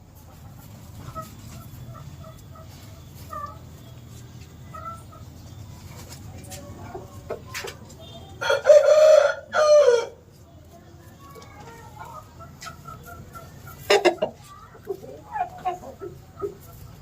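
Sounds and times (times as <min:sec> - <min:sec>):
chicken clucking softly: 0:00.1 - 0:09.6, 0:10.2 - 0:17.0.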